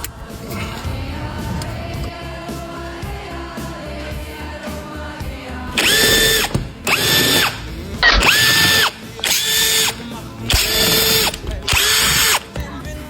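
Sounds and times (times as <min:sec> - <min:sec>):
cordless power tool motor whining: 0:05.8 - 0:12.6.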